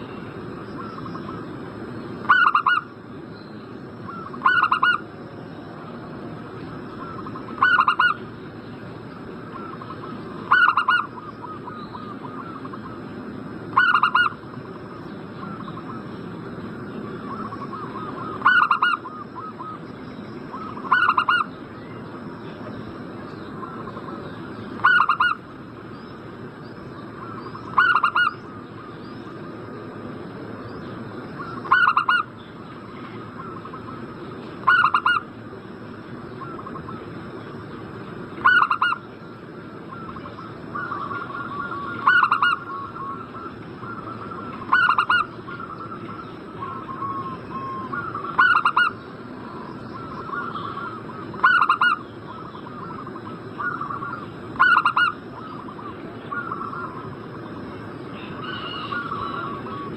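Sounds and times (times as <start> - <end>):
dove cooing loudly: 2.2 - 2.9, 4.1 - 5.1, 7.0 - 8.2, 9.5 - 13.0, 13.7 - 14.4, 17.2 - 19.8, 20.5 - 21.5, 24.8 - 25.4, 27.2 - 28.6, 31.4 - 32.3, 34.6 - 35.2, 38.4 - 39.0, 39.9 - 57.1, 58.2 - 59.9.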